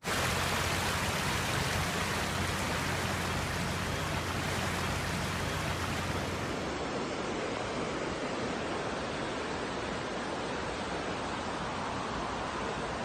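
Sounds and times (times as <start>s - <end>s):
heavy rain: 0.0s - 6.8s
rushing water: 0.0s - 13.0s.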